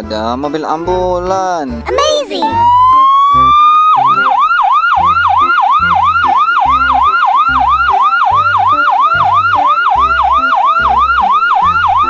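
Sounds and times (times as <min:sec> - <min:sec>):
electronic yelp siren: 0:02.5 - 0:12.0.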